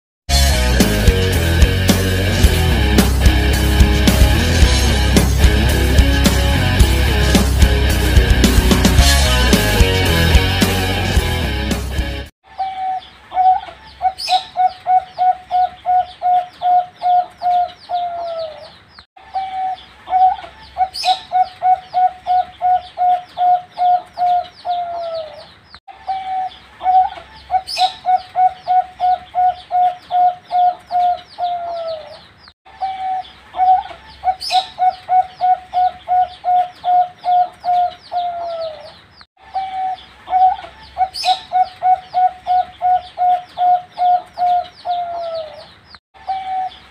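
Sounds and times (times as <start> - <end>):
dove cooing: 12.5 - 46.9.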